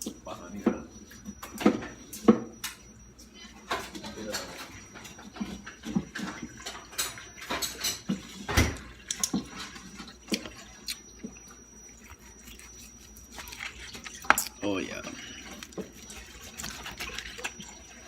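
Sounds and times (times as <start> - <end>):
wet dripping meat sounds: 8.2 - 18.0.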